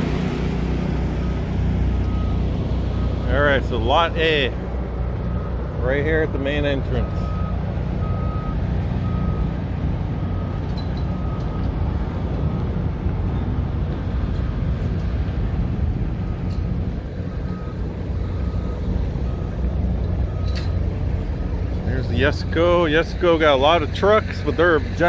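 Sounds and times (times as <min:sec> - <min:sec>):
truck engines rumbling: 0:00.0 - 0:25.0
reversing alarm beeping: 0:01.1 - 0:04.2, 0:06.9 - 0:09.6, 0:10.2 - 0:13.7, 0:16.2 - 0:25.0.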